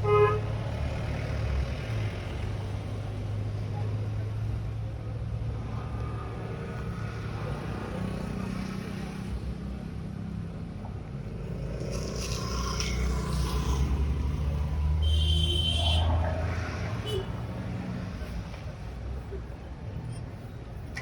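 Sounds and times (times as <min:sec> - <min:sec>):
traffic engine rumble: 0:00.0 - 0:21.0
vehicle passing close: 0:11.2 - 0:18.8.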